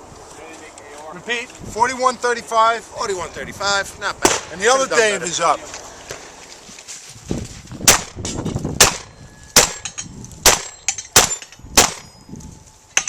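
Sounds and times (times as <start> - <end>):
shotgun shots: 4.2 - 4.7, 7.8 - 8.2, 8.8 - 12.1.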